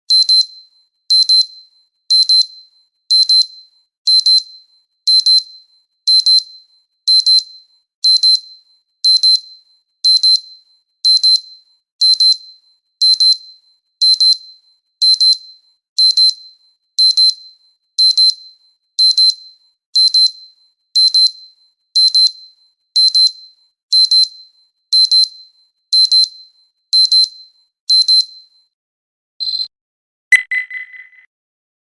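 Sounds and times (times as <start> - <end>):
high-pitched electronic beep: 30.3 - 31.3.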